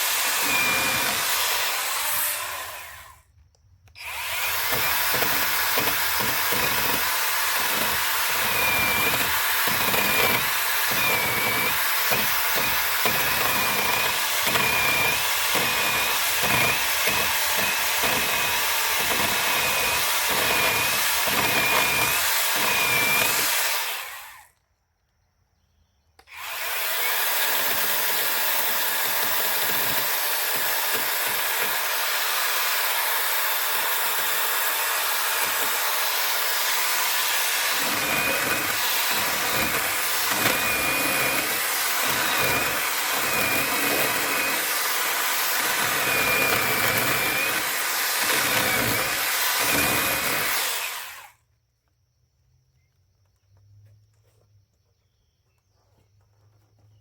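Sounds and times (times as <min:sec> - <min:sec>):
angle grinder grinding wood: 0:00.0 - 0:03.3, 0:03.9 - 0:24.6, 0:26.2 - 0:51.4.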